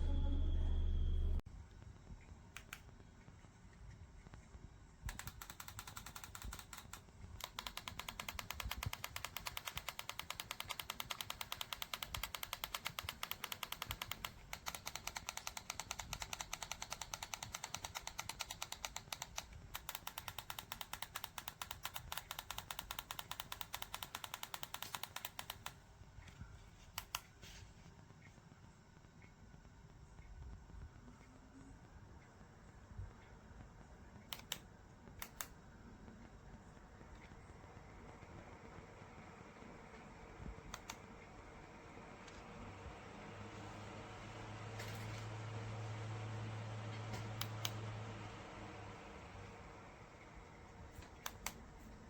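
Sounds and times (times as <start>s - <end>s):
rapid mechanical ticking: 5.1s - 25.9s.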